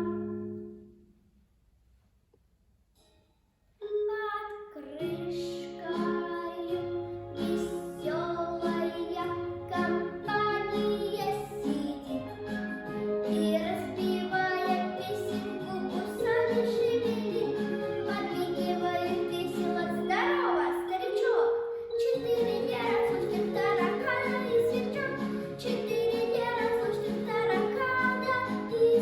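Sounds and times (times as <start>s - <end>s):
child singing: 3.8s - 12.3s, 13.2s - 29.0s
instrumental accompaniment: 6.8s - 20.2s, 21.6s - 29.0s.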